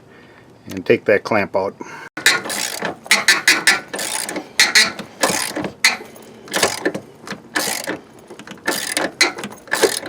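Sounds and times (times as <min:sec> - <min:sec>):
ratchet wrench clicking: 0:02.2 - 0:10.0.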